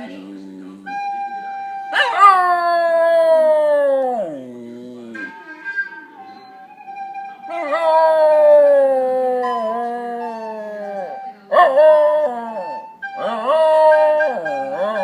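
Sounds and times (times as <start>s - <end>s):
dog howling: 1.9s - 5.2s, 7.5s - 15.0s.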